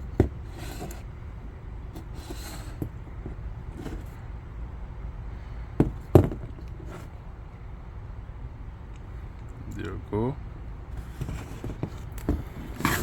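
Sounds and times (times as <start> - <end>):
low background rumble: 0.0 - 13.0
faint rustling: 10.9 - 13.0.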